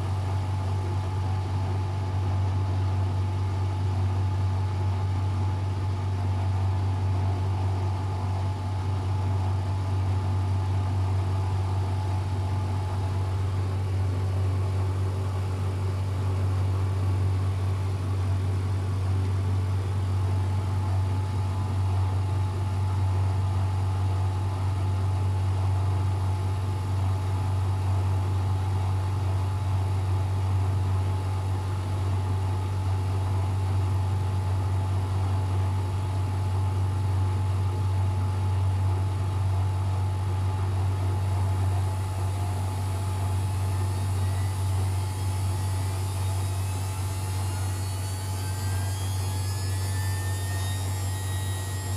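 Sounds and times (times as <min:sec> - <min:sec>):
washing machine spinning: 0:30.4 - 0:51.9.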